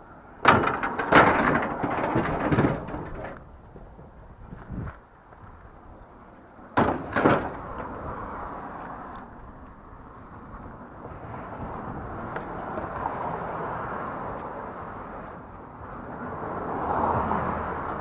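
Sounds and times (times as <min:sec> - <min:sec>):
vehicle noise: 0:00.0 - 0:18.0
loud bangs: 0:00.4 - 0:03.4, 0:06.8 - 0:07.9.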